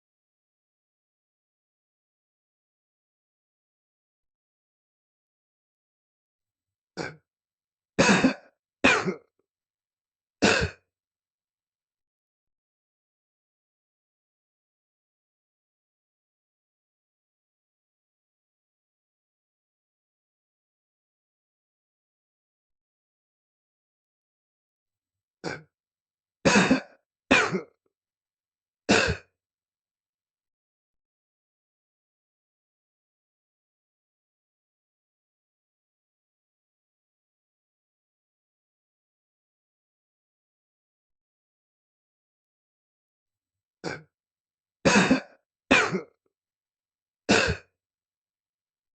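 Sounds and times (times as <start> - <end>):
person clearing throat: 7.0 - 7.2, 8.0 - 9.3, 10.4 - 10.8, 25.4 - 25.7, 26.5 - 27.8, 28.9 - 29.3, 43.8 - 44.1, 44.9 - 46.2, 47.3 - 47.7.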